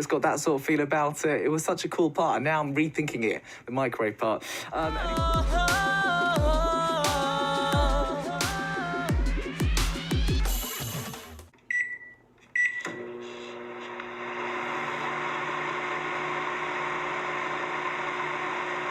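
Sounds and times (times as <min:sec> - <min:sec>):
electronic dance music: 0:04.8 - 0:11.5
microwave oven beeps: 0:11.7 - 0:13.2
microwave oven humming: 0:12.8 - 0:18.9.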